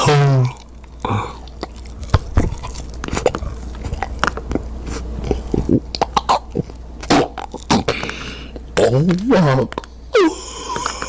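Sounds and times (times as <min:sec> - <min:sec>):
person chewing soap: 0:00.0 - 0:11.0
steady low hum: 0:00.0 - 0:11.0.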